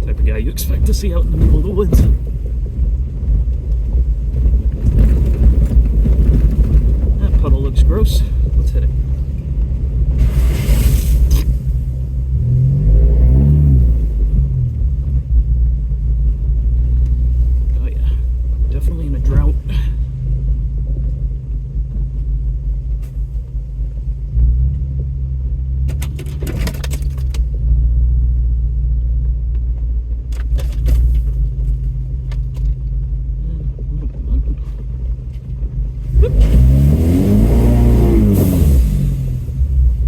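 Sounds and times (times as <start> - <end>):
body knocks and rattles: 0.0 - 10.4, 14.2 - 28.2, 29.1 - 36.0
truck engine running: 0.0 - 40.0.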